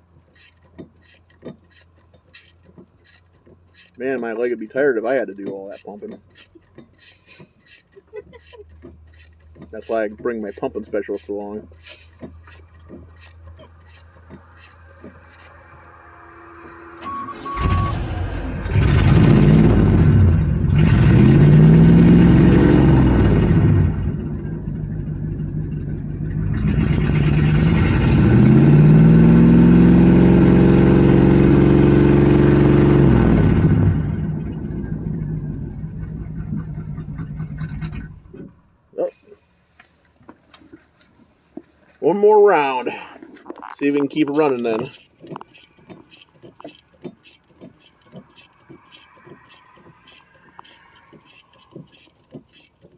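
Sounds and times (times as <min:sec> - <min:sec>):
car engine starting and revving: 0:08.4 - 0:38.6.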